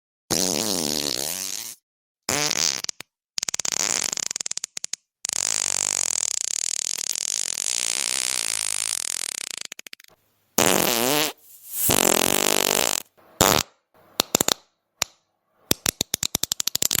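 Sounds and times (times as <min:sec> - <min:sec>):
fart sounds: 0:00.3 - 0:13.8.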